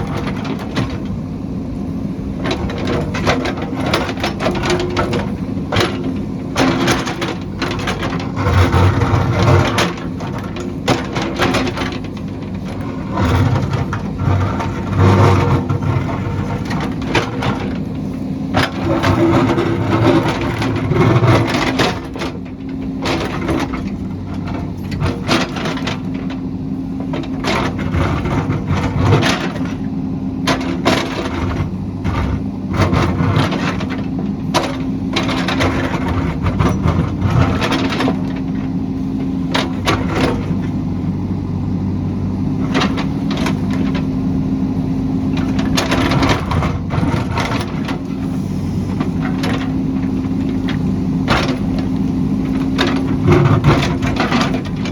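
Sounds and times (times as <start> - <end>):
diesel engine running under load: 0.0 - 54.9.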